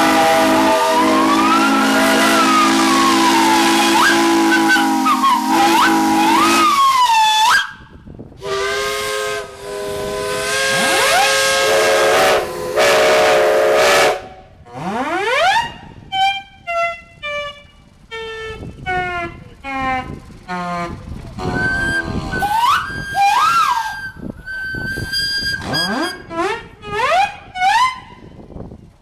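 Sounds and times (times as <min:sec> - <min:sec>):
steam hissing: 0:00.0 - 0:07.7, 0:08.4 - 0:14.4
steam whistles blowing: 0:00.0 - 0:28.8.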